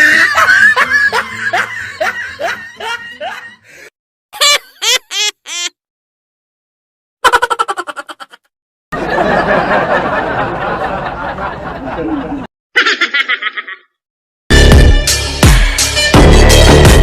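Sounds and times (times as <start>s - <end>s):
laughter sound effects: 0.0s - 3.6s, 4.4s - 5.7s, 7.2s - 14.0s.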